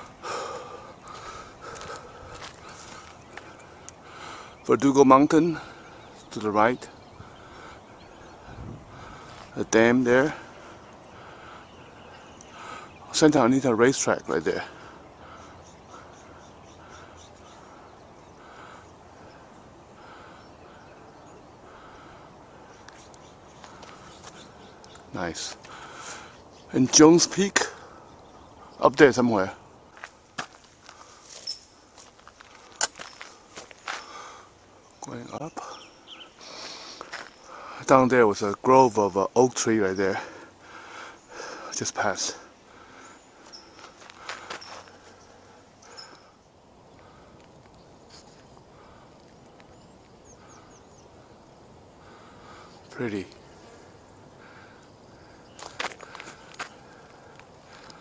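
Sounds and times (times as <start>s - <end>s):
footsteps crunching on dirt: 0.0s - 4.0s, 22.8s - 27.8s, 29.4s - 34.4s, 36.5s - 37.5s, 43.4s - 45.3s, 55.5s - 58.0s
bird calling steady note: 0.0s - 30.2s, 32.6s - 58.0s.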